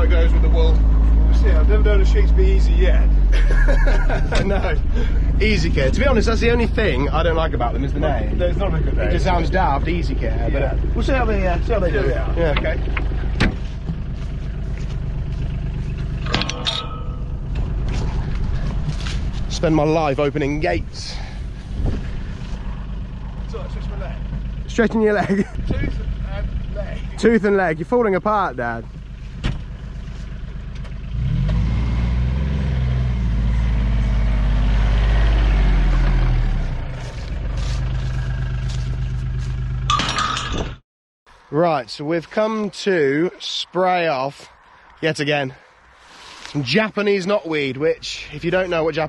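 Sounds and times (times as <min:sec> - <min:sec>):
vehicle engine rumbling: 0:00.0 - 0:49.0
metallic clank: 0:16.0 - 0:19.2, 0:39.9 - 0:40.8.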